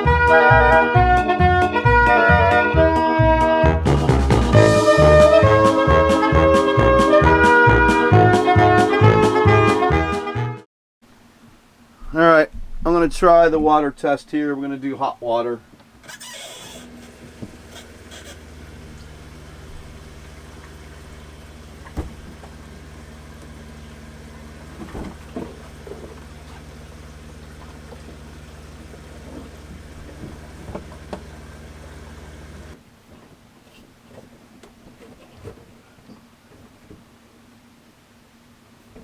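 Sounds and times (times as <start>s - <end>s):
water pump humming: 11.1s - 32.8s
knocks: 12.0s - 14.2s
water running from tap: 17.5s - 32.8s.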